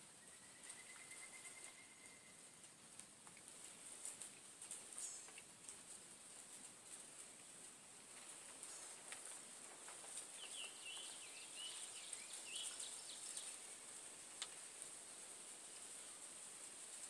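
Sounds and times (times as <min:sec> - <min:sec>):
steady high hiss: 0:00.0 - 0:17.0
small bird twittering: 0:10.4 - 0:13.6.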